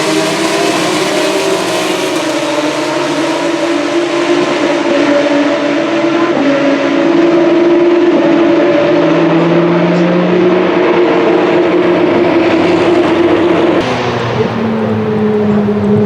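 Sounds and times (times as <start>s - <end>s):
race car engines at high revs: 0.0s - 16.0s.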